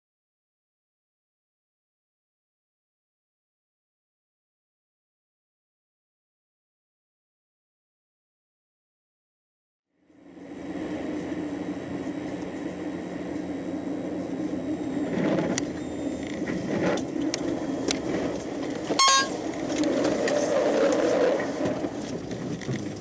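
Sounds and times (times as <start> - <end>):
vehicle running with road noise: 10.0 - 23.0.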